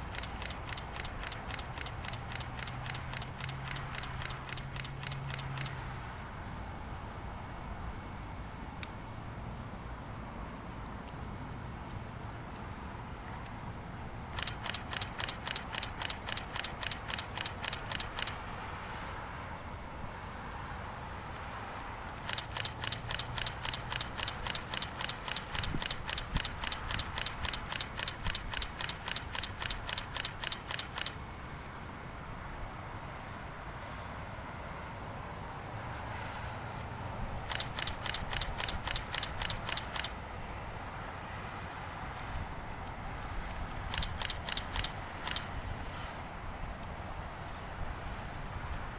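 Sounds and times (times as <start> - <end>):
camera shutter clicking: 0.0 - 5.9, 14.3 - 18.6, 22.1 - 31.3, 37.4 - 40.2, 43.8 - 45.5.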